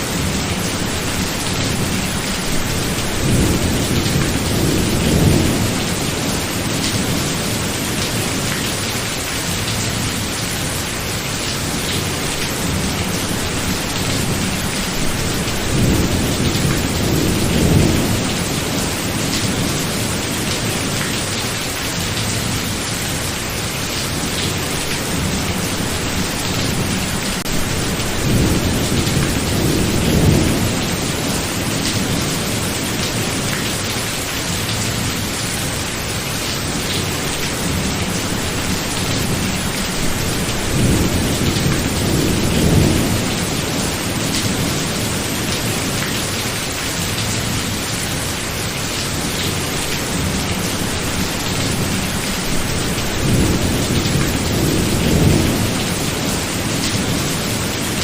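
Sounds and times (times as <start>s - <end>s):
heavy rain: 0.0s - 58.0s
thunder rumbling: 0.2s - 7.7s, 25.1s - 32.7s.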